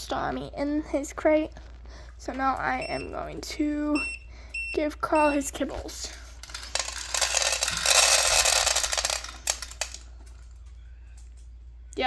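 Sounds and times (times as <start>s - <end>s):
kibble pouring into a bowl: 6.4s - 10.0s.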